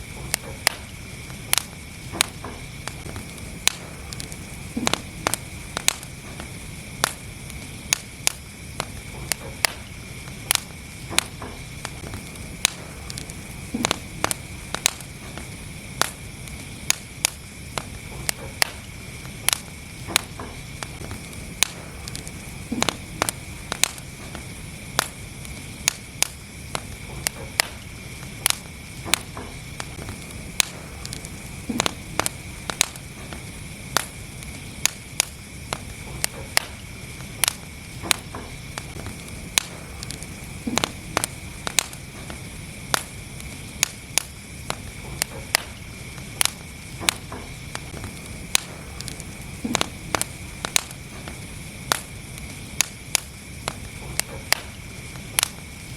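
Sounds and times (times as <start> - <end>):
low rumble and hiss: 0.0 - 55.9
wood fire crackling and popping: 0.0 - 55.9.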